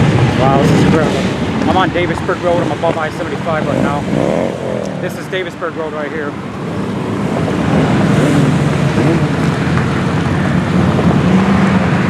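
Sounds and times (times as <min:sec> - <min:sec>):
motorcycle engines running: 0:00.0 - 0:12.0
wind on microphone: 0:06.3 - 0:12.0.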